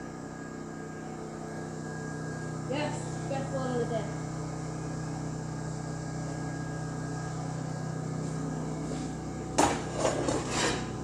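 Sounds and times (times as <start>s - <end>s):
generator humming: 0.0s - 11.0s
loud scraping knocks: 9.6s - 10.9s.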